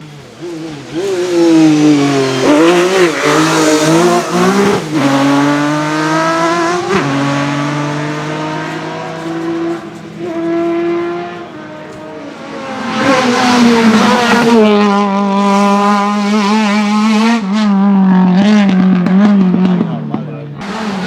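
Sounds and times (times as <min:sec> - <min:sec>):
gear shifts: 0:00.0 - 0:15.9
race car engine accelerating: 0:00.0 - 0:21.0.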